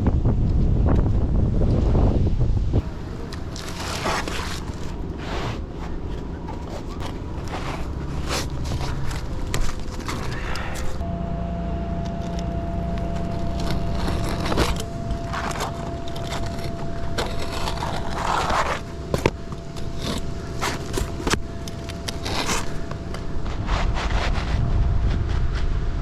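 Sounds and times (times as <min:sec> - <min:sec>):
steady low rumble: 0:00.0 - 0:26.0
scraping on shingles: 0:02.8 - 0:11.0, 0:12.3 - 0:25.9
faint steady high tone: 0:11.0 - 0:23.5.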